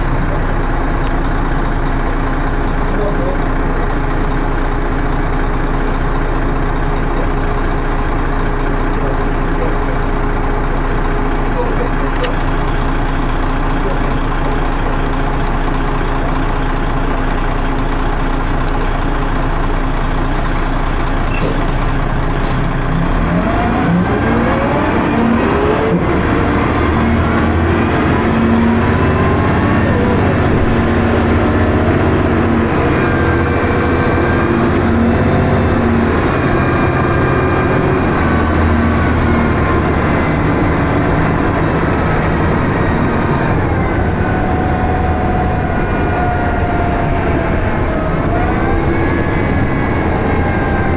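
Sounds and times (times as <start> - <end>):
bus engine idling and pulling away: 0.0 - 50.9.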